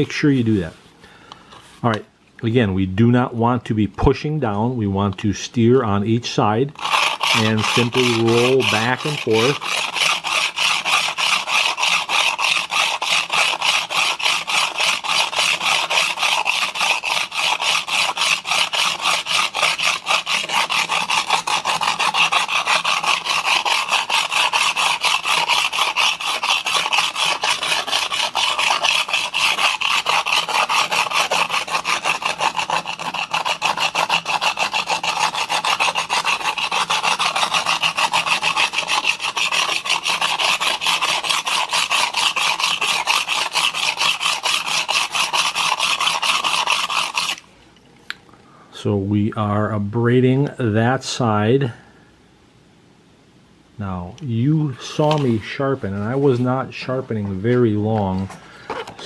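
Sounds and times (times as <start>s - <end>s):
blade scraping on sharpening plate: 6.8s - 47.4s.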